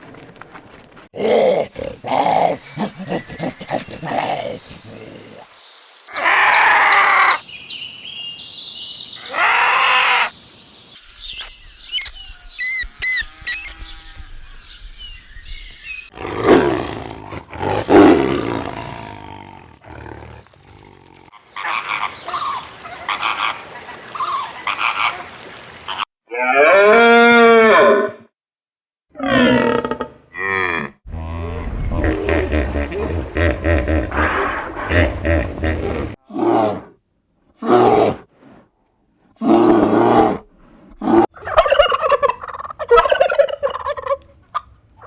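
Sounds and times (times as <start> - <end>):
loud animal calls: 1.2 - 5.5, 6.1 - 7.4, 9.2 - 10.3, 41.2 - 44.7
thin chirping calls: 10.4 - 16.1.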